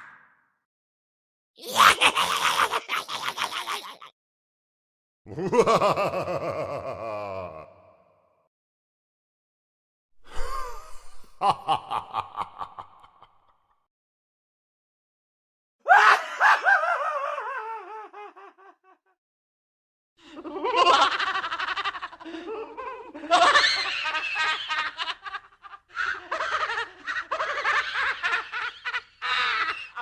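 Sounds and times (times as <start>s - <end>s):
scary laughing: 1.6s - 4.1s, 5.3s - 8.0s, 10.3s - 13.5s, 15.9s - 19.2s, 20.3s - 30.0s.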